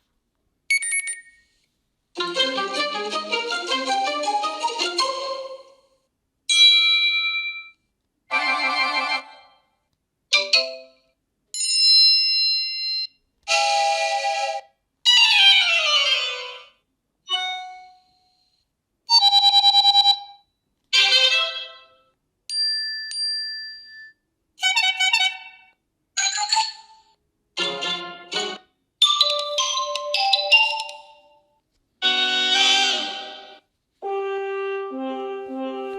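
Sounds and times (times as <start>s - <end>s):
phone alert tones: 0.7s - 1.5s.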